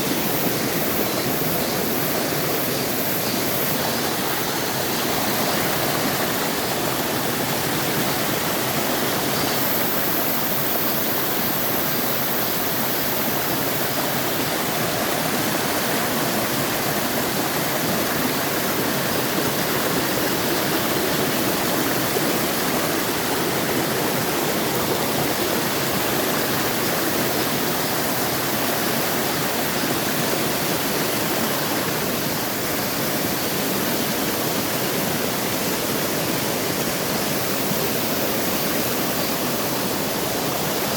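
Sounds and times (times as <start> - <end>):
stream rushing over rocks: 0.0 - 40.9.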